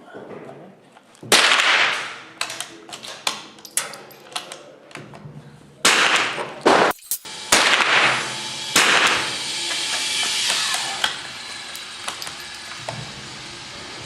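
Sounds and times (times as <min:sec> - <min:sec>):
rifle shots echoing indoors: 0:01.3 - 0:03.4, 0:05.8 - 0:09.4.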